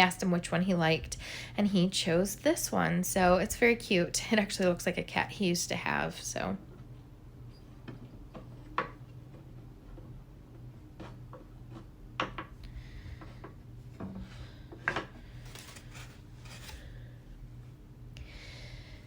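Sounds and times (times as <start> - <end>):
soft rubbing and rustling: 15.4 - 16.9.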